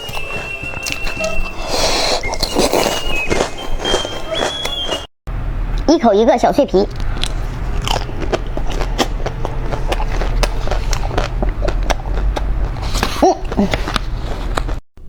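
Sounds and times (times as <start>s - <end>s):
crunching and chewing: 0.0s - 5.1s, 6.8s - 14.8s
steady low hum: 5.3s - 14.7s.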